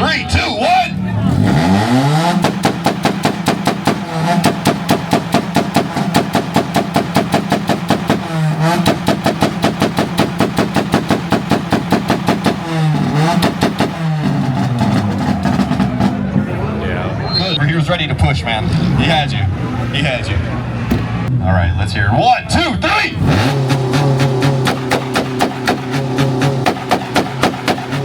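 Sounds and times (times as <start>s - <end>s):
car engine revving: 0.0s - 21.5s, 22.5s - 28.0s
rapid exhaust pops: 1.5s - 16.7s, 23.1s - 28.0s.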